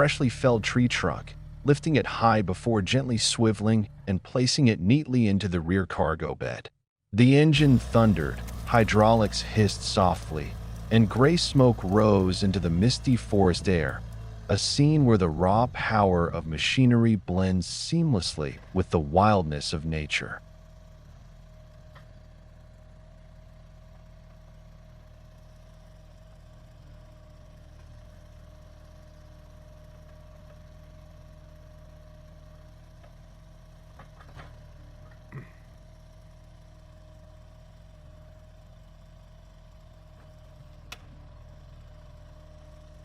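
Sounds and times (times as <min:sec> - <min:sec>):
low machine hum: 0:00.0 - 0:06.4, 0:07.2 - 0:43.0
constant tone: 0:07.2 - 0:22.1.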